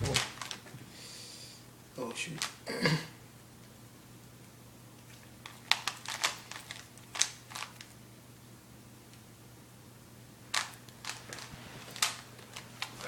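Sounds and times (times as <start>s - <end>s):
faint steady hum: 0.0s - 13.0s
puzzle cube plastic clicks: 5.4s - 7.9s.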